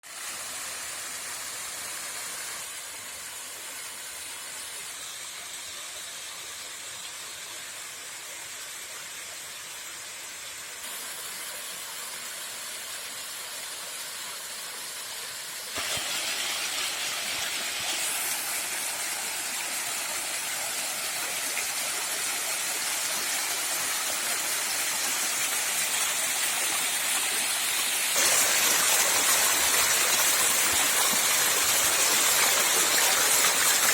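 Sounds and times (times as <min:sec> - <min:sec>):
waterfall rushing: 0:15.7 - 0:33.9.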